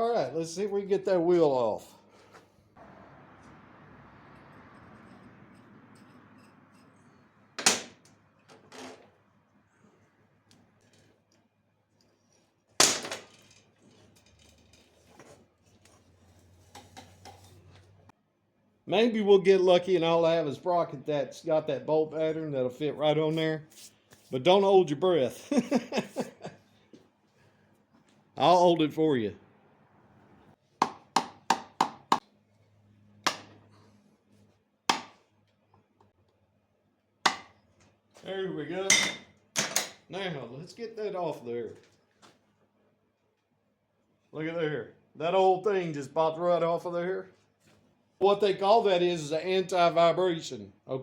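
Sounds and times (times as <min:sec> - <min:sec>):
tools clinking and knocking: 0:04.4 - 0:09.1, 0:12.9 - 0:15.4, 0:38.9 - 0:40.1.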